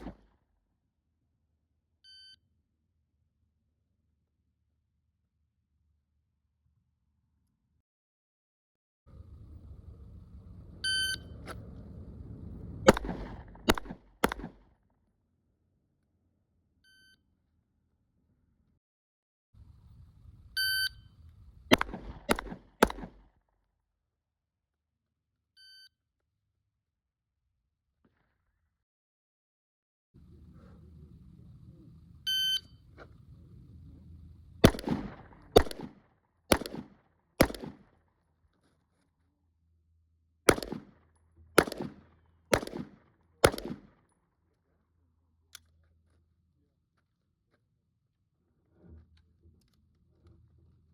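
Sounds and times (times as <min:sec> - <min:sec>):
pistol shots: 0:00.0 - 0:00.2, 0:12.9 - 0:14.6, 0:21.7 - 0:23.2, 0:34.6 - 0:37.9, 0:40.5 - 0:41.0, 0:41.6 - 0:44.0
shot timer beep: 0:10.9 - 0:11.2, 0:32.3 - 0:32.7.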